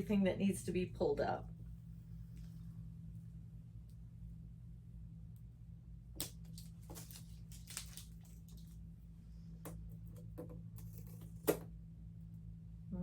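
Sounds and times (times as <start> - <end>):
low steady hum: 0.0 - 13.0
tape peeling with crackling rips: 6.2 - 8.8.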